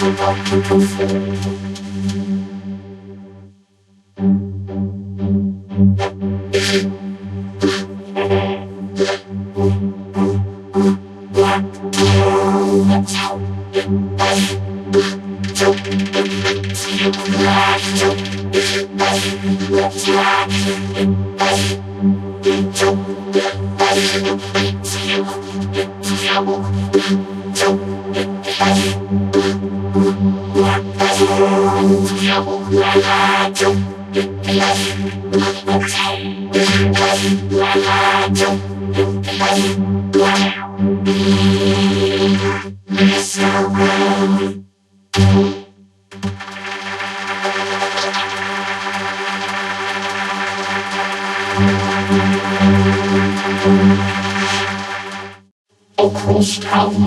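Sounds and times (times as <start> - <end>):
vocoded synthesizer-like voices: 56.0 - 57.0.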